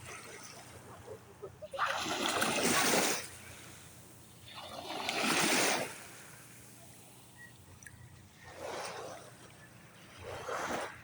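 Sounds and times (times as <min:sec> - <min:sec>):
waves splashing: 0:00.0 - 0:11.0.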